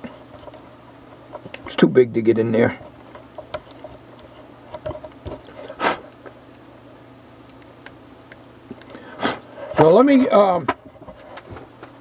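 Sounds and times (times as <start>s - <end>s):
handling clicks and rubs: 2.8s - 9.0s.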